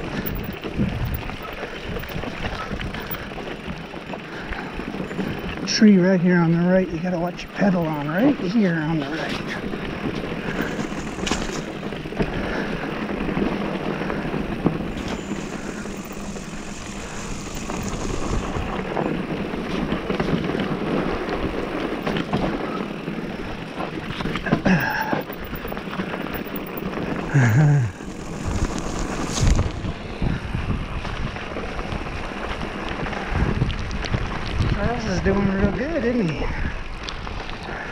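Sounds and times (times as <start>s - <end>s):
wind on microphone: 0.0s - 3.7s, 9.2s - 22.8s, 26.3s - 37.9s
bike rattles and clicks: 0.0s - 37.9s
bike tyres on dirt trail: 0.0s - 37.9s.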